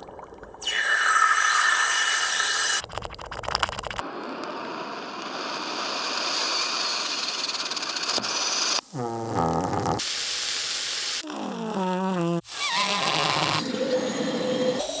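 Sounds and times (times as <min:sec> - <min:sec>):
steam hissing: 0:04.6 - 0:15.0.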